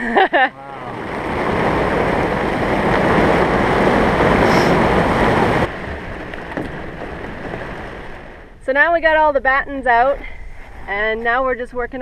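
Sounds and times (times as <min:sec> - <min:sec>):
heavy rain and wind rushing: 0:00.0 - 0:08.6.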